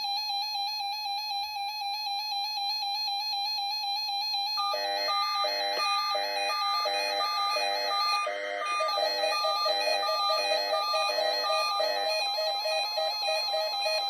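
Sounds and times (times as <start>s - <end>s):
alternating high and low beeps: 5.0s - 14.0s.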